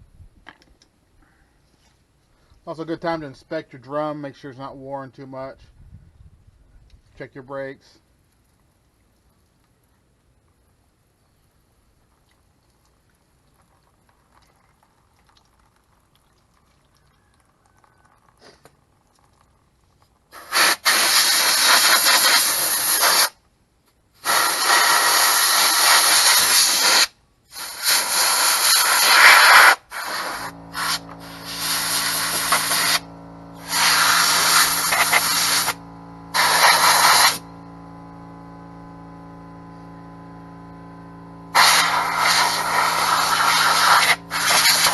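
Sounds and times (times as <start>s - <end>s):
pressurised spray hissing: 20.3s - 23.4s, 24.2s - 44.9s
steady machine hum: 29.8s - 44.9s.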